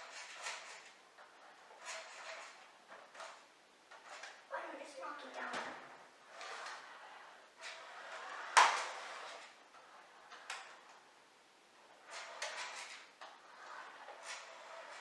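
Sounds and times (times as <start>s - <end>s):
toy car rattling: 0.0s - 4.4s, 6.2s - 11.1s, 11.9s - 15.0s
toy car knocking into obstacles: 8.5s - 9.1s.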